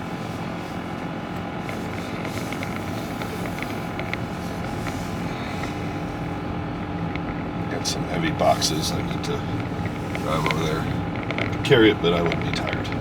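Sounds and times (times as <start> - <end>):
vehicle engine running: 0.0 - 13.0
faint clicks: 8.6 - 13.0.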